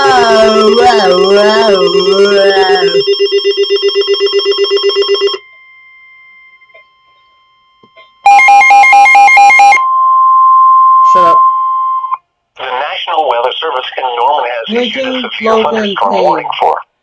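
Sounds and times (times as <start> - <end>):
rapid alternating beeps: 0.0 - 6.6
steady high alert tone: 0.0 - 6.8, 8.2 - 9.9.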